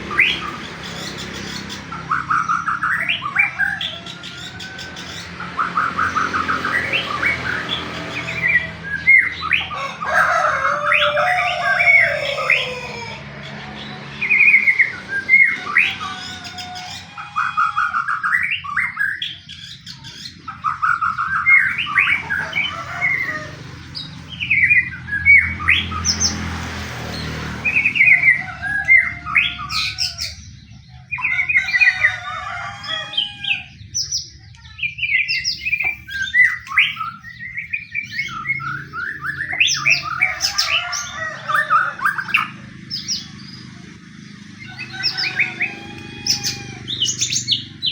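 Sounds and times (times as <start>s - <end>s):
bird singing trills and whistles: 0.0s - 9.8s, 13.7s - 22.7s, 33.8s - 43.7s.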